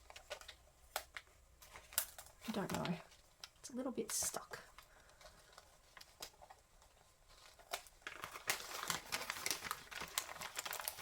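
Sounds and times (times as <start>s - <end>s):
wrapping paper crinkling: 0.0s - 11.0s.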